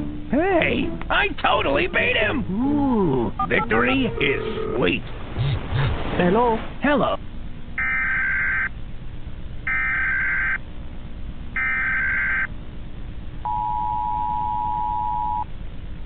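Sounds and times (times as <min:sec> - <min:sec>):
two-note attention signal: 0:03.4 - 0:04.8.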